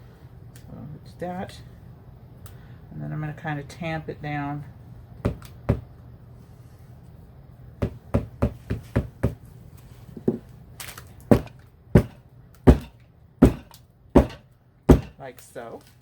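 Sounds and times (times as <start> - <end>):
soap mold knocking on surface: 5.3 - 5.9, 7.8 - 9.4, 11.3 - 15.2.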